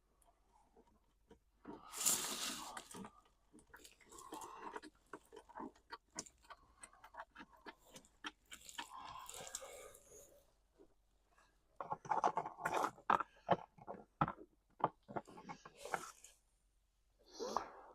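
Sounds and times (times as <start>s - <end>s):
small irregular clicks and knocks: 0.1s - 1.9s, 2.8s - 9.7s, 11.4s - 16.4s
rustling scrape: 1.8s - 2.9s.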